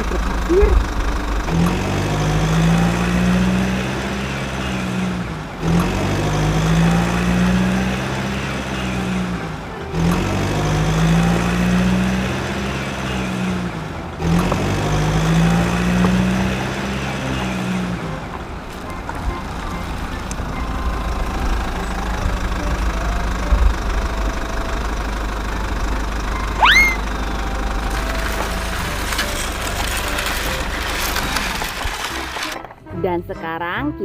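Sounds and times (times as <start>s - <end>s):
truck engine running: 0.0s - 33.1s.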